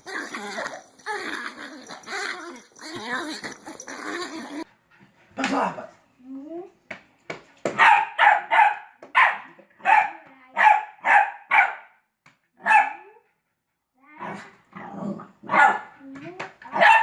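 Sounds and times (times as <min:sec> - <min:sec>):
dog barking: 0:07.8 - 0:12.0, 0:12.6 - 0:13.1, 0:15.5 - 0:16.0, 0:16.7 - 0:17.0.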